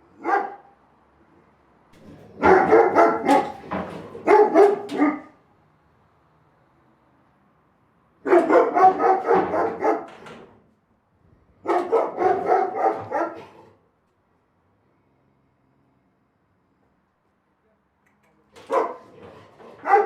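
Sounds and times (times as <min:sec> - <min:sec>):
big dog barking: 0:00.0 - 0:00.8, 0:02.0 - 0:05.4, 0:08.2 - 0:10.4, 0:11.6 - 0:13.8, 0:18.6 - 0:20.0.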